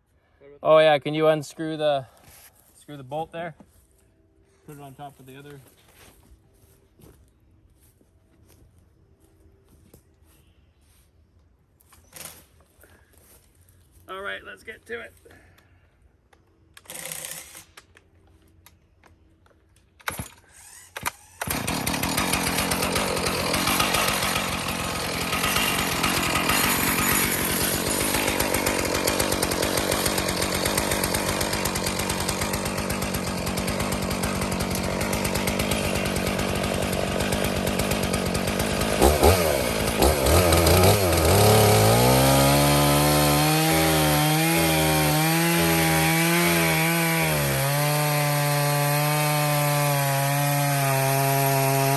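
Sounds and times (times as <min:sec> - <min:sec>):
chainsaw cutting wood: 0:16.8 - 0:18.0, 0:20.0 - 0:51.9.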